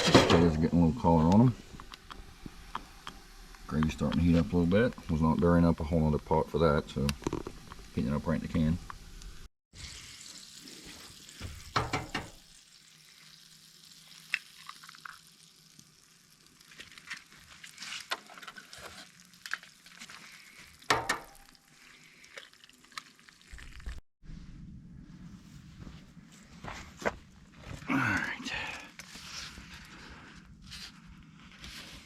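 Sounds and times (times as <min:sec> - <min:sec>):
utensil scraping pan: 0:00.0 - 0:00.7
potatoes sizzling in a pan: 0:08.7 - 0:22.2.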